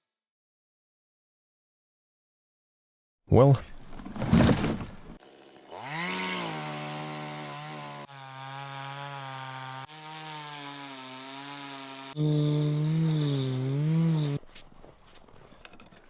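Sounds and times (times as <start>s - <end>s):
two-stroke chainsaw revving: 5.2s - 14.4s.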